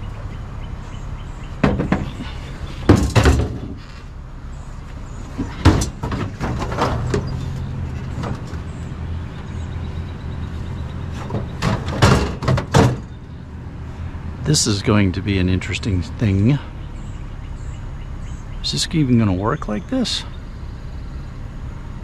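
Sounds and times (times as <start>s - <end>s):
vehicle engine idling: 0.0s - 22.0s
sharp knocks and clunks: 1.6s - 3.9s, 5.4s - 8.7s, 11.0s - 13.2s.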